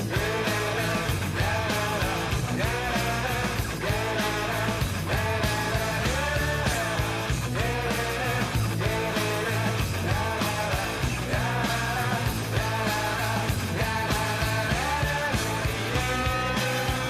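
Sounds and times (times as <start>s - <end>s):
drums: 0.0s - 17.0s
guitar: 0.0s - 17.0s
person singing: 0.0s - 17.0s.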